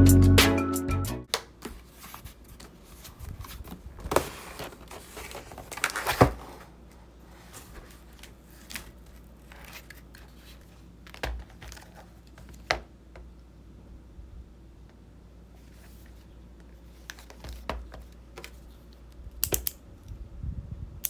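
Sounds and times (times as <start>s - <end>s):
packaging tearing and crinkling: 4.0s - 6.7s.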